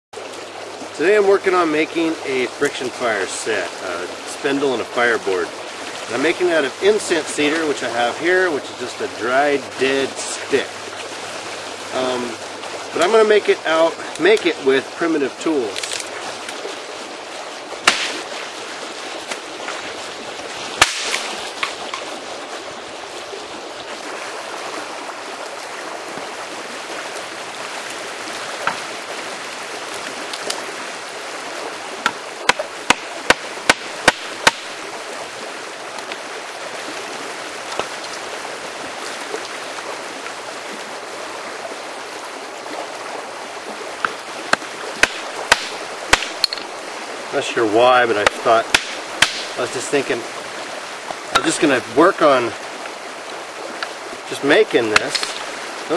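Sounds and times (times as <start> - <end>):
creek water running: 0.1 - 55.9
sharp knocks: 32.0 - 34.8, 44.5 - 46.6, 48.2 - 49.6.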